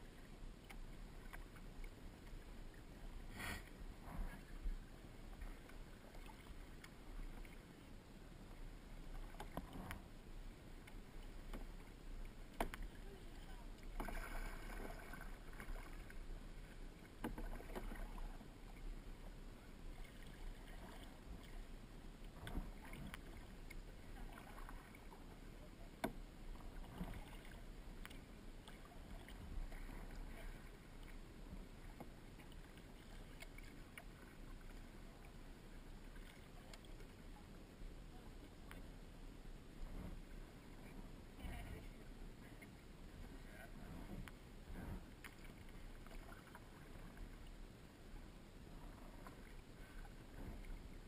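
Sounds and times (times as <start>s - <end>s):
paddles splashing in water: 8.5s - 35.3s, 43.2s - 47.5s.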